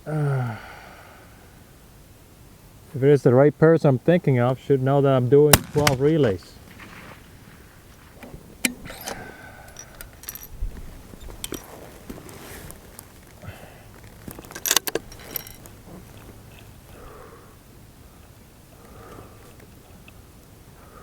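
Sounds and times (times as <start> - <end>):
handling clicks and rattles: 5.5 - 6.9, 8.2 - 13.4, 14.0 - 16.7.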